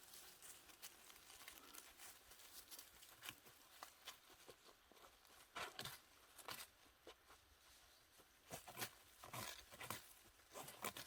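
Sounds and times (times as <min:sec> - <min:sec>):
leaf litter and twigs crackling: 0:00.0 - 0:04.8.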